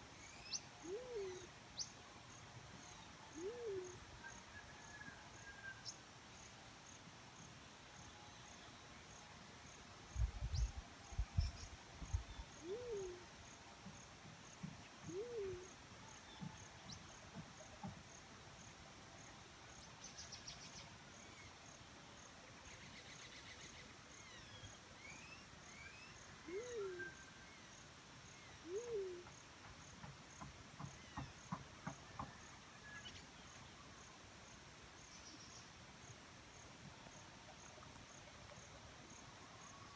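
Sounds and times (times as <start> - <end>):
dove cooing: 0.8 - 1.5, 3.4 - 4.0, 12.6 - 13.2, 15.1 - 15.7, 26.5 - 27.1, 28.6 - 29.3.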